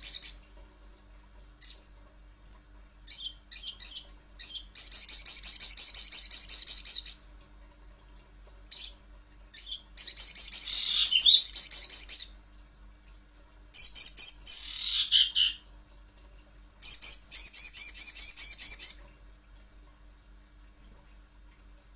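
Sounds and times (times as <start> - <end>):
bird ticking trills: 9.6 - 12.3, 13.8 - 15.6.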